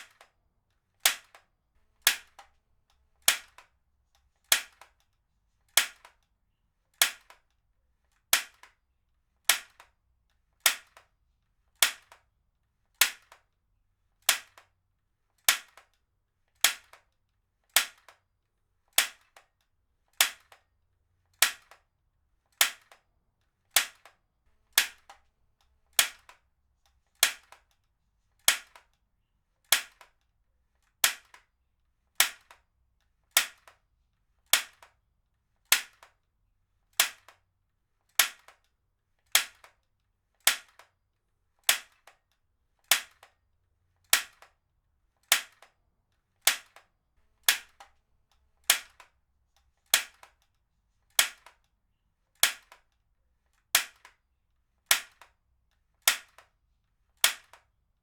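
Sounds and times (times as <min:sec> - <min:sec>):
stapler firing snaps: 0:01.0 - 0:01.4, 0:03.3 - 0:03.7, 0:16.6 - 0:17.0, 0:23.7 - 0:24.2, 0:29.7 - 0:30.2, 0:40.5 - 0:40.9, 0:41.7 - 0:42.2, 0:45.3 - 0:45.7, 0:46.4 - 0:47.9, 0:48.6 - 0:49.1, 0:49.9 - 0:50.4, 0:51.2 - 0:51.6, 0:53.8 - 0:54.2, 0:57.2 - 0:57.6.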